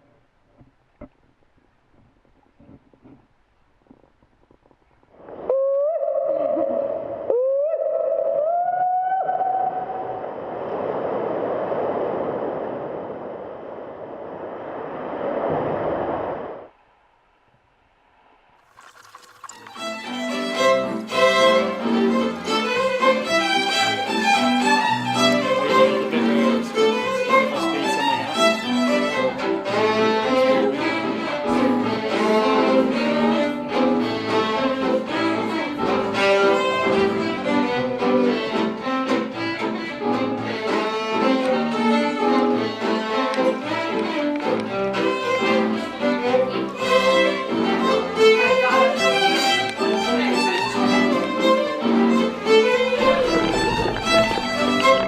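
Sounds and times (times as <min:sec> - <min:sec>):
bowed string accompaniment: 0:18.9 - 0:55.0
fiddle playing brisk tune: 0:19.6 - 0:55.0
steady beat: 0:53.0 - 0:55.0.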